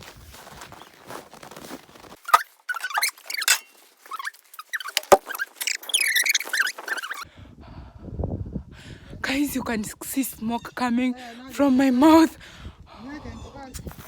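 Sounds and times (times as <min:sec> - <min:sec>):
snow crunching and squeaking: 0:00.0 - 0:07.3, 0:13.8 - 0:14.0.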